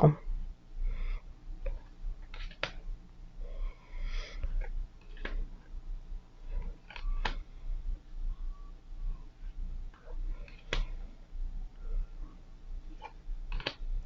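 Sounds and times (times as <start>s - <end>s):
low steady hum: 0.0s - 14.0s
cards sliding and rustling: 1.6s - 2.8s, 4.0s - 5.5s, 6.5s - 7.5s, 10.0s - 11.1s, 12.9s - 13.9s
cards tapped down: 2.3s - 2.8s, 4.6s - 5.4s, 6.9s - 7.4s, 13.5s - 13.9s.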